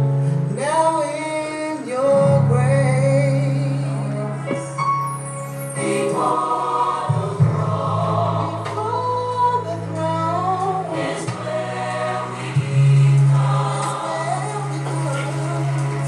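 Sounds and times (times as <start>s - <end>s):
choir singing gospel music: 0.8s - 16.0s
sustained bass line: 6.8s - 16.0s.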